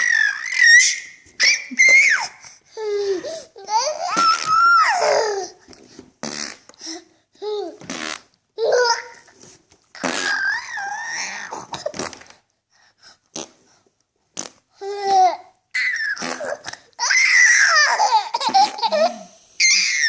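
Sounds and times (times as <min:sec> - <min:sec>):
baby squealing laugh: 0:00.0 - 0:02.5, 0:03.1 - 0:05.5, 0:10.0 - 0:11.6, 0:15.1 - 0:20.0
baby laughing and babbling: 0:00.0 - 0:05.7, 0:07.4 - 0:07.9, 0:08.6 - 0:09.4, 0:14.8 - 0:19.4.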